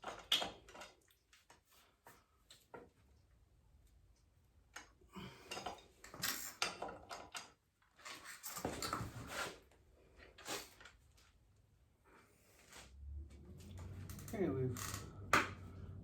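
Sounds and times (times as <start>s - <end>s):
metal tools clinking: 5.5s - 7.5s.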